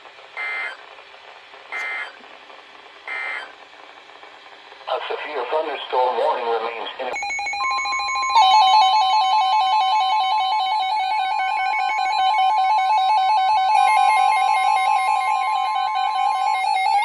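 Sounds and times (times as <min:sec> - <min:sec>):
loud steady high tone: 0:06.9 - 0:17.0.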